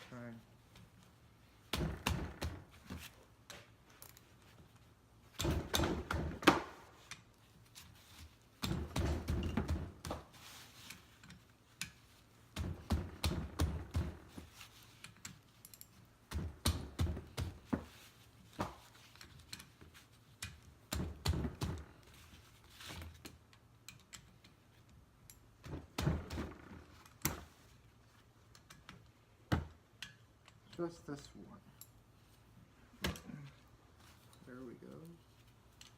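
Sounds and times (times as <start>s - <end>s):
hand tools clicking and knocking on metal: 1.6s - 27.6s, 28.4s - 31.0s.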